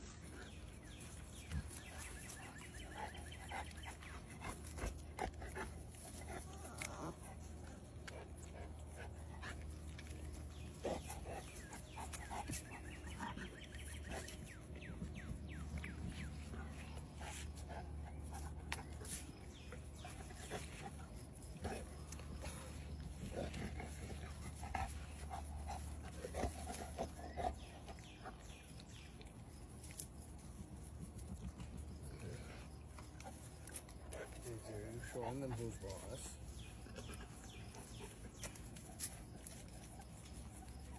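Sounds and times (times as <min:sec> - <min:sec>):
puppies whining: 0:06.2 - 0:07.9.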